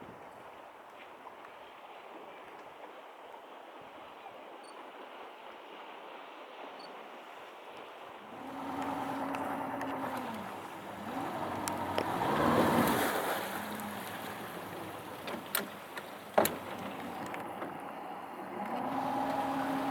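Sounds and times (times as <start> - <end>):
rushing water: 0.0 - 19.9
engine humming: 8.2 - 19.9.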